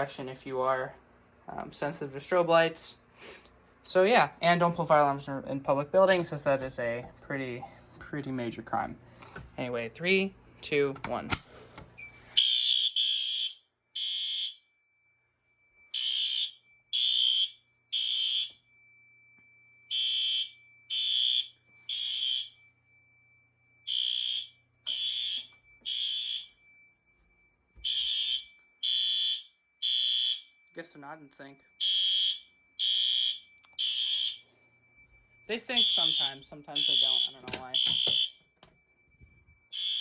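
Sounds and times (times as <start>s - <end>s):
fire alarm horn blasts: 12.2s - 19.1s, 19.8s - 40.0s.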